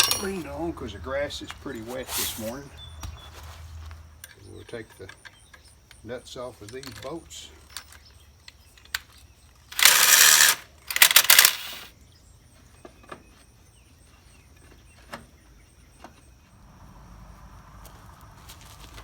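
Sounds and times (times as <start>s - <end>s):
metallic clicks of nuts: 0.0s - 0.6s, 4.2s - 11.9s
cordless drill spinning nuts: 9.6s - 11.9s.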